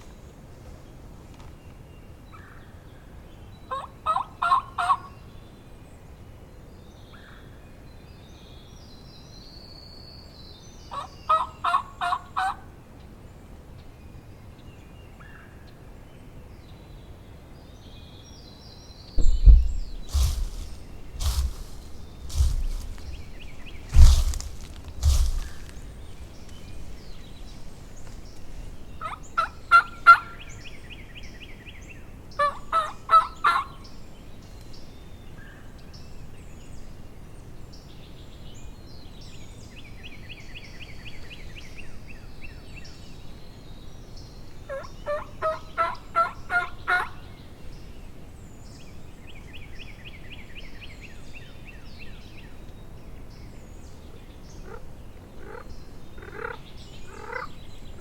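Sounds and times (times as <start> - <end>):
turkey gobbling: 4.1 - 5.0.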